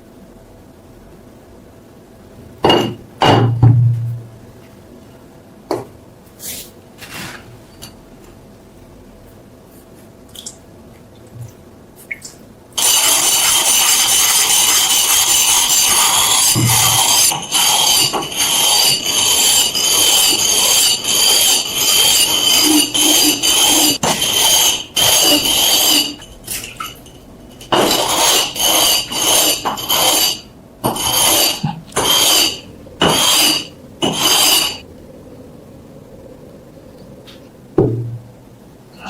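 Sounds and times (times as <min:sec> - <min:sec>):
hand tool scraping metal: 0:12.8 - 0:27.0, 0:27.6 - 0:34.8.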